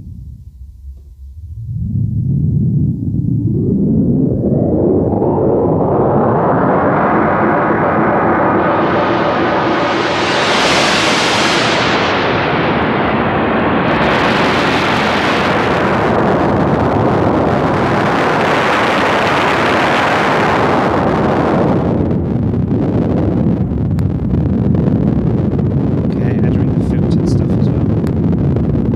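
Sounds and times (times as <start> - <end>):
synthesizer rushing noise: 1.4 - 15.1.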